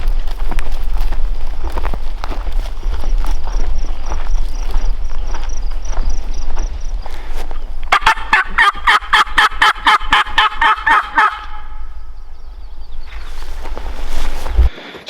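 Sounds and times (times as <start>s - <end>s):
turkey gobbling: 7.8s - 11.9s.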